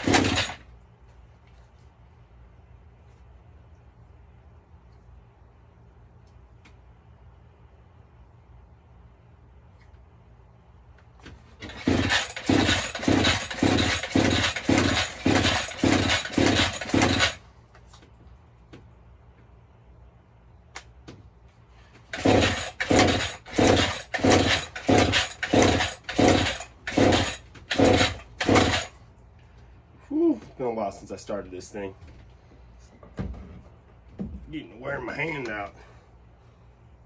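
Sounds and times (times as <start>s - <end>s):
chainsaw recoil starter pulls: 0.0s - 0.7s, 11.6s - 17.4s, 22.1s - 29.0s
engine turning over without catching: 0.0s - 0.7s, 11.2s - 17.5s, 22.0s - 29.0s.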